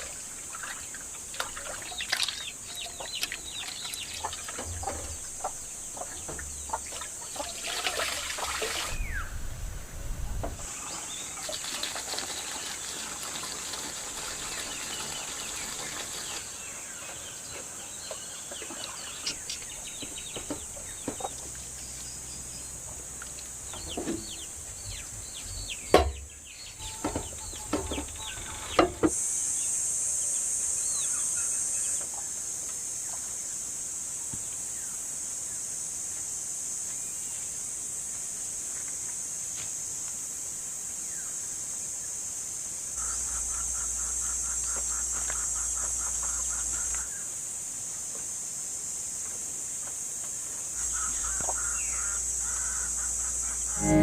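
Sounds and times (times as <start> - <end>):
steady high-pitched hiss: 0.0 - 54.0
chickens clucking: 2.8 - 8.2, 18.0 - 21.6
sharp knocks: 25.9 - 26.4.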